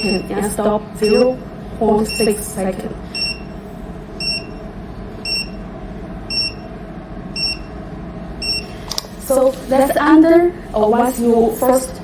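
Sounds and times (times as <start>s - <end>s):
low steady hum: 0.0s - 12.0s
short high beeps: 5.2s - 5.6s, 6.3s - 6.6s, 7.4s - 7.7s, 8.4s - 8.7s.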